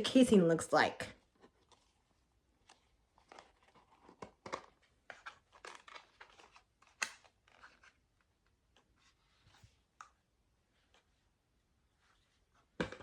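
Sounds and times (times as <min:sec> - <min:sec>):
packaging crinkling: 0:02.6 - 0:08.0.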